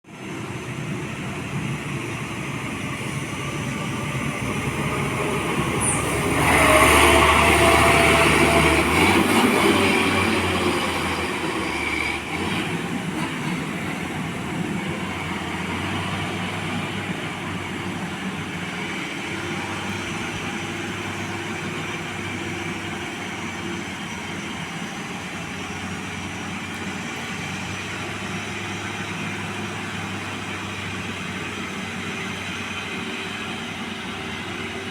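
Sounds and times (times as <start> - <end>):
truck engine rumbling: 0.1 - 34.9.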